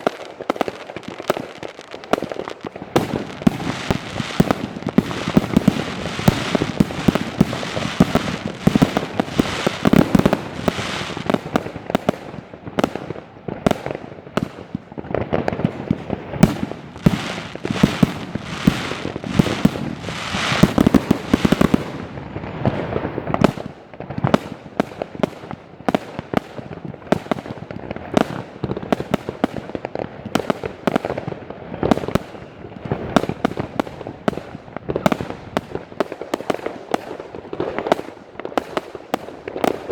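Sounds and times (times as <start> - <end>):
firework aerial bursts: 1.0 - 12.4, 13.8 - 23.7.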